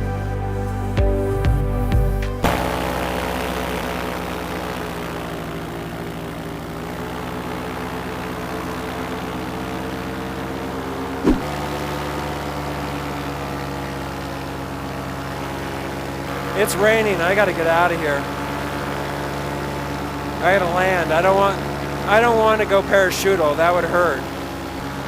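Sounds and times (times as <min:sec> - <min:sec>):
paramotor engine and propeller: 0:02.4 - 0:25.0
brief knock: 0:11.3 - 0:11.5.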